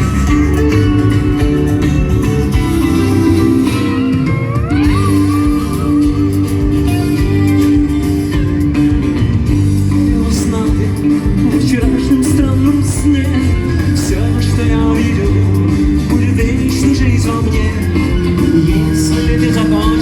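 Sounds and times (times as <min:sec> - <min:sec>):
guitar: 0:00.0 - 0:20.0
rock band playing live: 0:00.0 - 0:20.0.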